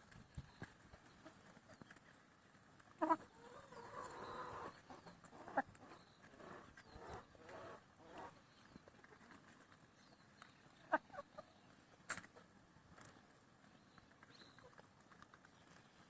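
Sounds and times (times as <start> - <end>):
chickens calling: 2.8 - 12.5.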